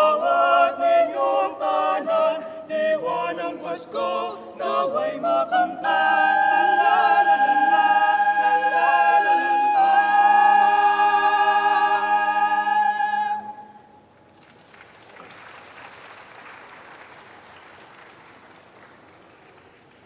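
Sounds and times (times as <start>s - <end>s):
chamber choir singing a cappella: 0.0s - 13.9s
faint audience applause: 14.3s - 20.0s.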